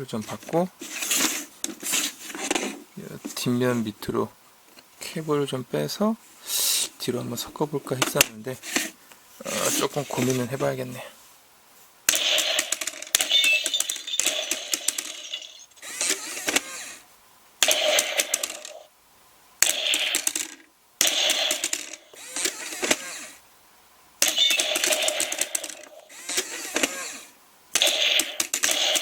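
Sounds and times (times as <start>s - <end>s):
electronic target clicking and rattling: 12.1s - 16.9s, 17.6s - 18.9s, 19.6s - 23.1s, 24.2s - 27.0s, 27.8s - 29.0s.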